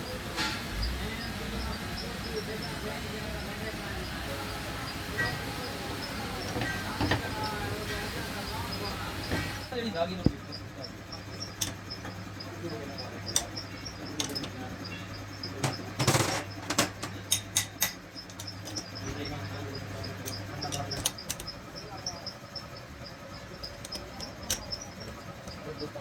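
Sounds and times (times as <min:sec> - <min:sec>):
motor hum: 0:00.0 - 0:26.0
rapid high insect chirping: 0:00.0 - 0:26.0
metallic tool clicks and knocks: 0:16.8 - 0:18.9.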